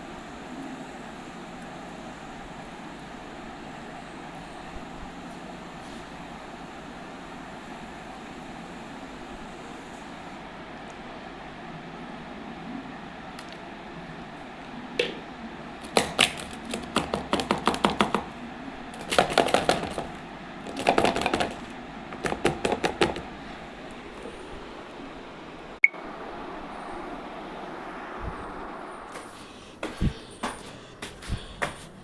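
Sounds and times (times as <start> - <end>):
utensil striking dish rapidly: 15.8 - 18.3, 19.0 - 23.3.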